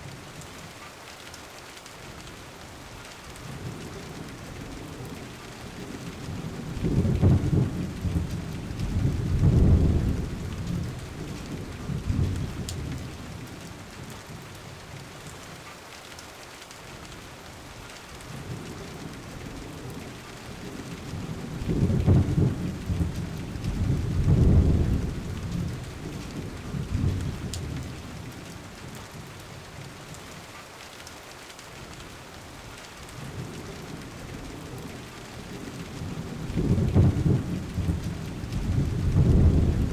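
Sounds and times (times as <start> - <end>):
steady rain: 0.0 - 39.9
rolling thunder: 5.8 - 13.2, 20.6 - 28.3, 33.3 - 39.9.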